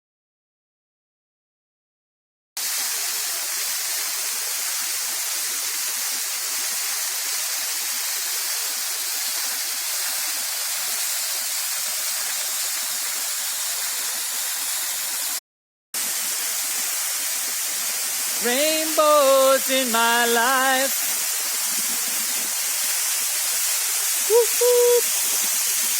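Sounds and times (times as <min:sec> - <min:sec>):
waterfall rushing: 0:16.0 - 0:25.9.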